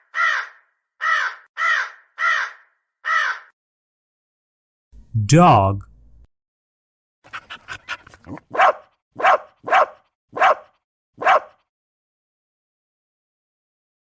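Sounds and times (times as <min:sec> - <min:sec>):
dog barking: 0:08.2 - 0:11.7.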